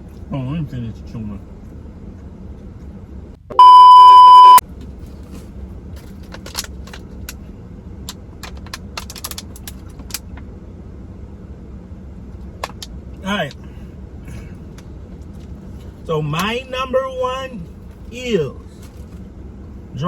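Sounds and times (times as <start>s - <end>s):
car interior rumble: 0.0s - 20.0s
loud beep tone: 3.5s - 4.6s
light clicks and rattles: 4.8s - 10.5s.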